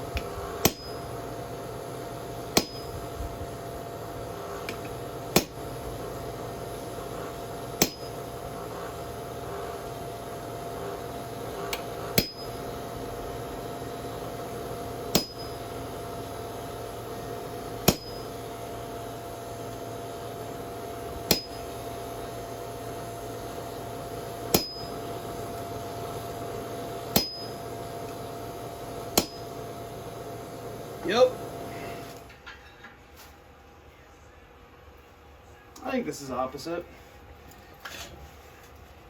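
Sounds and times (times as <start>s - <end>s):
steady hum: 0.0s - 39.0s
hammer blows on anvil: 15.1s - 15.6s, 17.8s - 18.3s, 21.3s - 21.7s, 24.5s - 25.0s, 27.1s - 27.6s.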